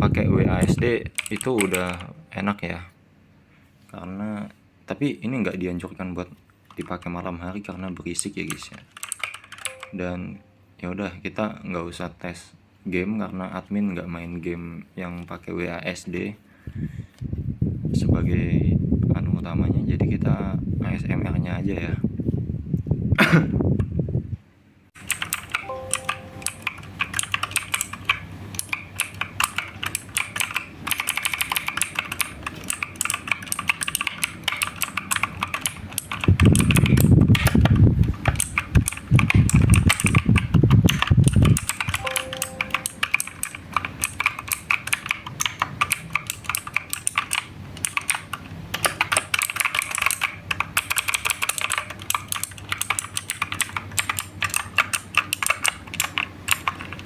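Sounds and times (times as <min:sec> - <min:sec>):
mechanical keyboard typing: 0:00.6 - 0:02.2, 0:06.7 - 0:10.1, 0:25.0 - 0:57.0.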